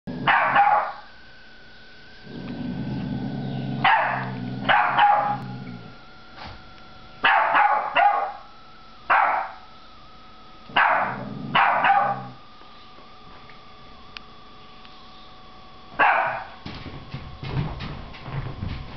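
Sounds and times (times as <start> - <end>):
dog growling: 0.1 - 0.4, 2.2 - 6.0, 11.0 - 12.4
dogs barking: 0.2 - 1.1, 3.8 - 5.7, 7.2 - 8.5, 9.1 - 9.6, 10.7 - 12.4, 16.0 - 16.6.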